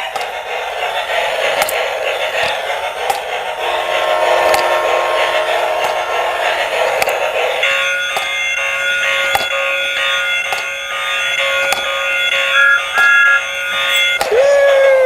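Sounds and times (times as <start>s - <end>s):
toy electronic buzzing tones: 10.0s - 14.2s.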